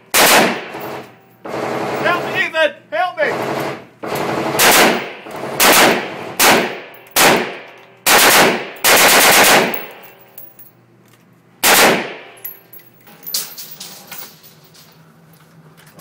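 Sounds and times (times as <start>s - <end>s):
automatic gunfire bursts: 0.1s - 2.5s, 3.3s - 10.0s, 11.6s - 12.3s.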